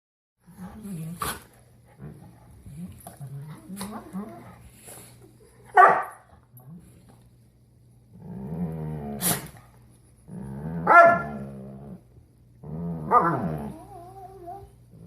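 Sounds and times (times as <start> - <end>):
dogs play-growling and yelping: 0.4 - 5.7, 8.1 - 15.0
dog sneezing: 9.2 - 9.6
dog whining: 13.0 - 14.8.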